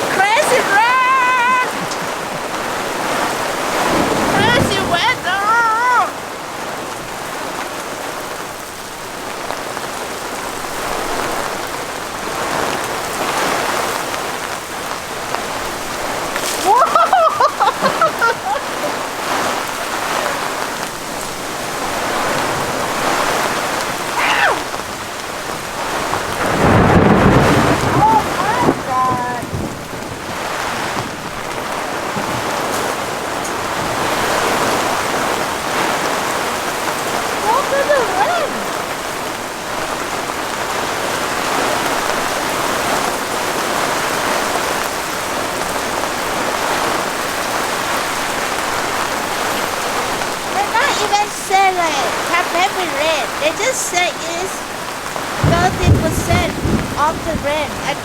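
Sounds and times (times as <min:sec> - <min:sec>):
heavy rain hissing: 0:00.0 - 0:58.0
low thunder rumble: 0:01.6 - 0:06.4, 0:10.7 - 0:39.8, 0:54.7 - 0:58.0.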